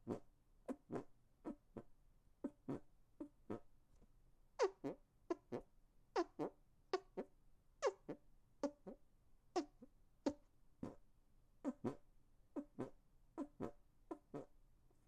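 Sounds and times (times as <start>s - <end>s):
hand farts: 2.4s - 2.8s, 12.6s - 14.5s.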